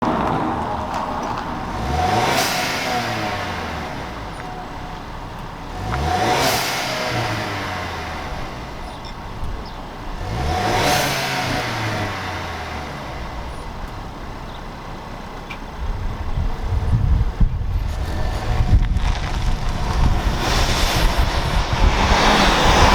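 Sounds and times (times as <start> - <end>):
car engine revving: 0.0 - 14.6, 15.7 - 22.9
wind buffeting microphone: 15.8 - 22.9.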